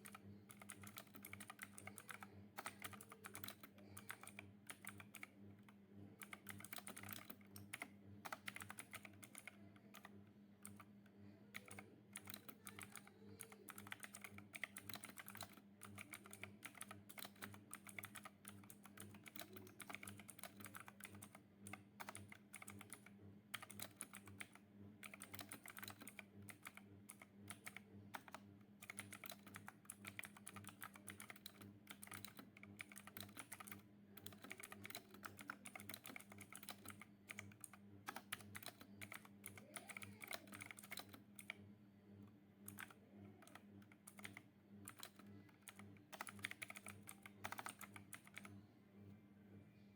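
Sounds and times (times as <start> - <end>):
mechanical keyboard key clicks: 27.5 - 41.6, 42.7 - 48.5.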